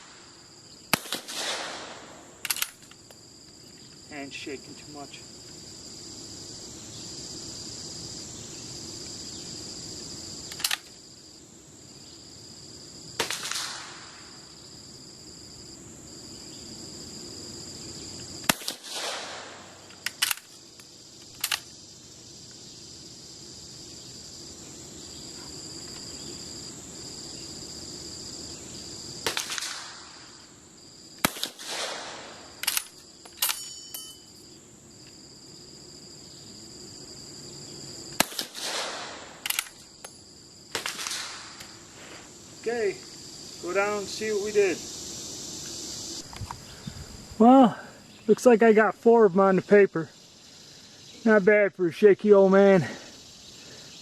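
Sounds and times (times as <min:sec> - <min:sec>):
crickets chirping: 0:00.0 - 0:54.0
rifle shots with echo: 0:00.9 - 0:02.7, 0:13.2 - 0:14.2, 0:18.5 - 0:19.8, 0:29.2 - 0:30.2, 0:31.2 - 0:32.6, 0:38.2 - 0:39.7, 0:40.7 - 0:41.6
rifle bolt metallic clicks: 0:02.4 - 0:03.0, 0:10.5 - 0:10.9, 0:19.9 - 0:20.6, 0:21.4 - 0:21.7, 0:32.6 - 0:33.7, 0:39.4 - 0:39.9.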